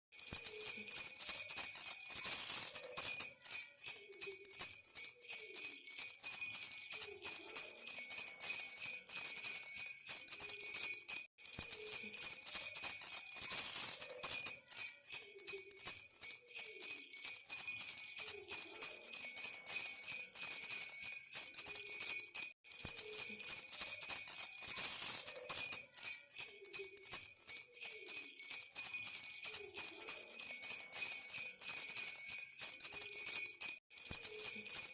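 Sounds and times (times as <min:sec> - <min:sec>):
bell rattle jingling: 0:00.2 - 0:34.9.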